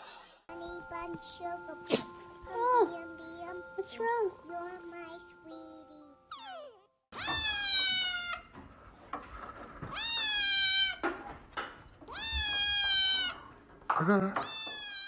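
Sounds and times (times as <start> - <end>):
cat meowing: 6.3 - 8.6, 9.9 - 11.1, 12.0 - 13.5, 14.4 - 15.0.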